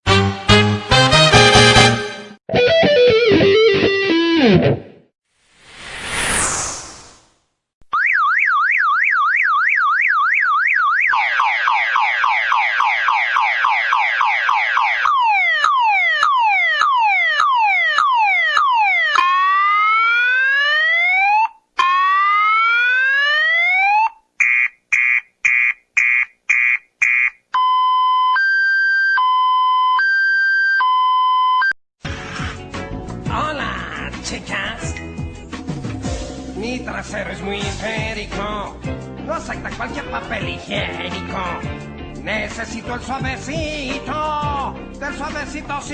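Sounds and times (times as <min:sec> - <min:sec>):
car alarm siren: 0:07.9 - 0:31.8.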